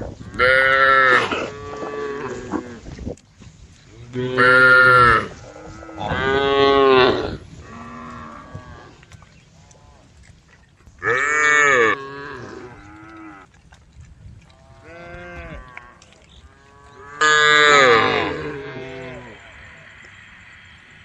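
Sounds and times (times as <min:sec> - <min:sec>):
cattle mooing: 0:00.3 - 0:02.8, 0:11.0 - 0:13.4, 0:14.6 - 0:19.5.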